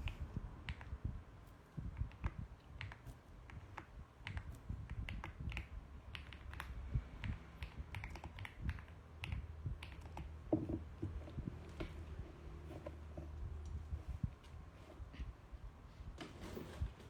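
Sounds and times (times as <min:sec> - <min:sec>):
mechanical keyboard clicks: 0:02.0 - 0:10.3.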